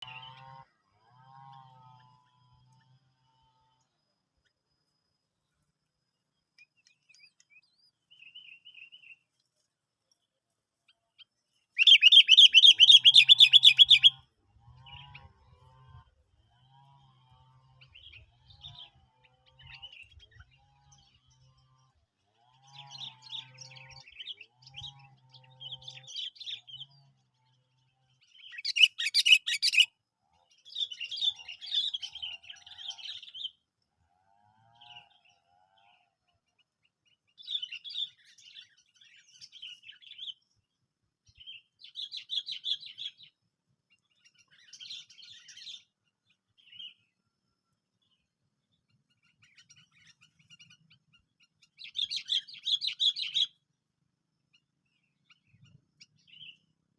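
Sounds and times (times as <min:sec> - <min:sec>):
birds chirping: 0:11.7 - 0:14.2, 0:28.2 - 0:29.9
harsh rasping bird call: 0:28.6 - 0:29.9.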